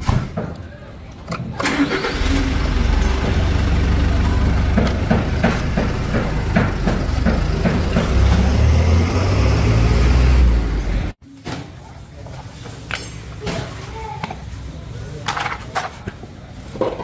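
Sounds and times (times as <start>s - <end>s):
engine rumbling: 1.6s - 11.2s
regular knocks: 3.2s - 9.8s.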